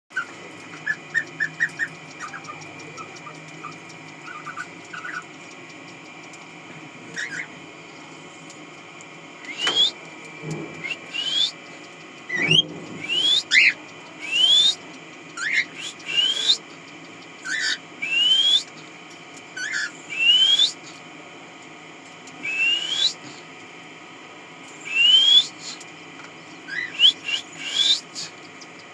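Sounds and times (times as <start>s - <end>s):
parrot whistling: 9.4s - 10.0s, 10.8s - 11.6s, 12.3s - 14.8s, 15.4s - 16.6s, 17.4s - 18.7s, 19.6s - 20.8s, 22.4s - 23.2s, 24.8s - 25.8s, 26.7s - 28.3s.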